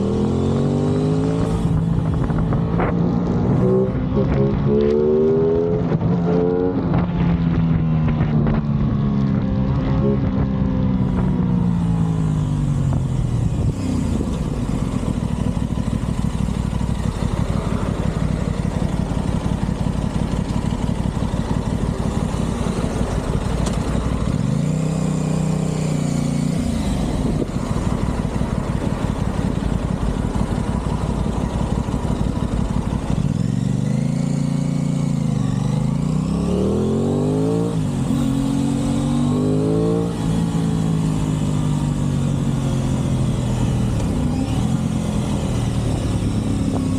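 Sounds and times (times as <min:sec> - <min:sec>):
motorcycle engine revving: 0:00.0 - 0:46.9.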